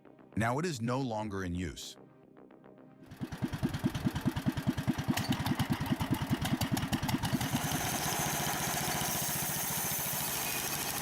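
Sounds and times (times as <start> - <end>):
small engine chugging: 3.1 - 11.0.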